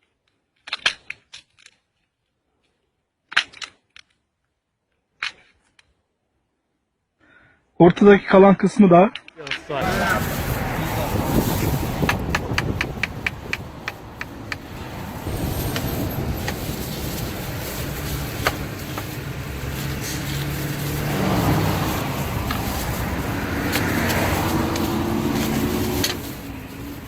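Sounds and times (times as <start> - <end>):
low rumble of traffic: 9.4 - 27.0.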